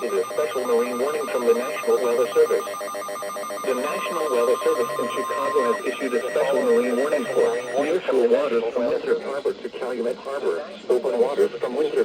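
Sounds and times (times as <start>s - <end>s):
steady high tone: 0.0s - 8.6s
voice reading a warning: 0.0s - 12.0s.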